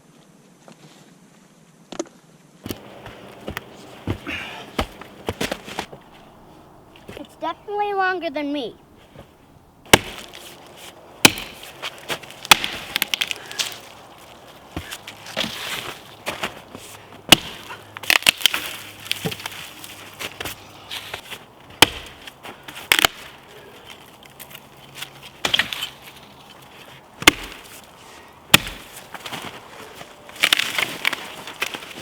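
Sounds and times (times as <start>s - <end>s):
wood chopping strikes: 2.0s - 6.1s, 9.8s - 16.6s, 17.3s - 19.6s, 20.4s - 23.4s, 25.4s - 26.0s, 27.2s - 27.9s, 28.5s - 29.6s, 30.3s - 32.0s
wood crackling and rustling: 2.6s - 32.0s.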